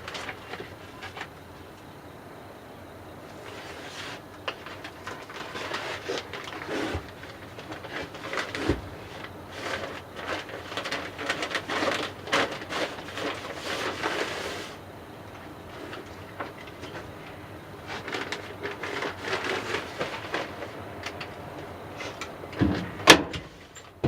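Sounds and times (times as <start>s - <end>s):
paper insulation crinkling: 0.0s - 1.8s, 3.3s - 24.0s.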